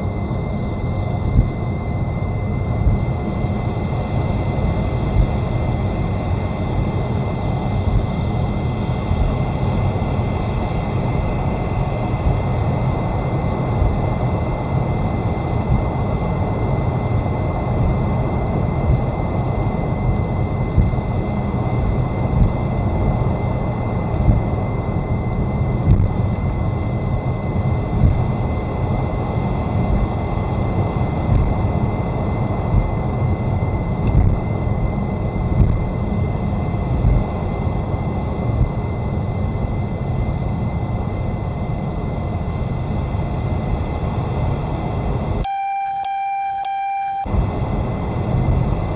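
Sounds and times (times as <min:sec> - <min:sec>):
road and drivetrain rumble: 0:00.0 - 0:45.5, 0:47.2 - 0:48.9
high-pitched whistle: 0:45.4 - 0:47.3.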